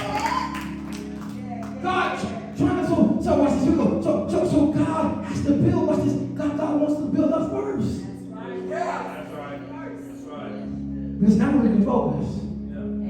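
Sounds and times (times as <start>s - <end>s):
voices singing in church: 0.0s - 4.7s, 7.6s - 11.2s
sustained instrumental chords: 0.0s - 13.0s.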